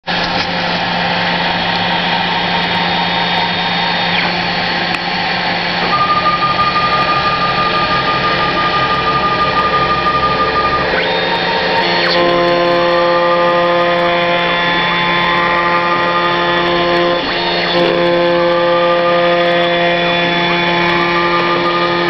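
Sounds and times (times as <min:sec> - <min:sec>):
cnc machine cutting plastic: 0:00.0 - 0:22.0
constant hum: 0:00.0 - 0:22.0
high whine gliding down: 0:00.0 - 0:22.0
steady tone: 0:00.1 - 0:22.0.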